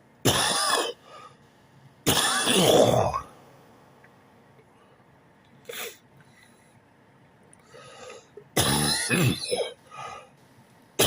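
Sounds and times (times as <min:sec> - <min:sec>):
man clearing throat: 0:02.1 - 0:03.3, 0:08.6 - 0:09.8
man coughing: 0:08.6 - 0:09.8.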